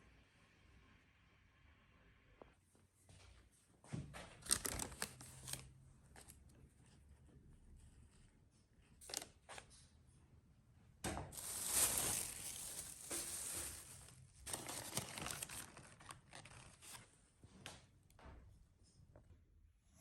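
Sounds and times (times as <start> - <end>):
rustling and scraping: 11.3 - 17.0.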